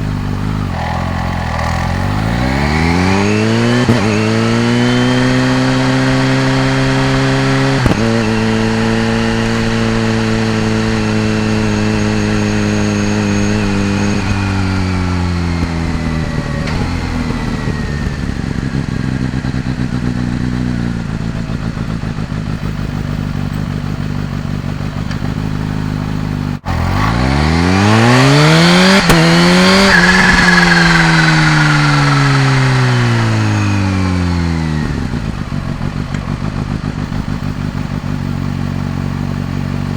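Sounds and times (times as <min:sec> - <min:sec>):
motorcycle engine revving: 0:00.0 - 0:39.9
supercharger whine: 0:00.0 - 0:39.9.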